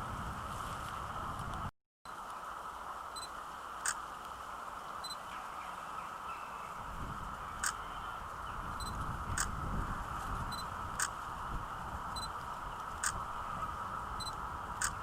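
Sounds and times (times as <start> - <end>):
steady outdoor hiss: 0.0 - 15.0
sharp clicks: 7.6 - 7.8, 11.0 - 11.2, 12.3 - 13.2, 14.2 - 15.0
faint ticks: 10.9 - 11.2, 12.2 - 13.2.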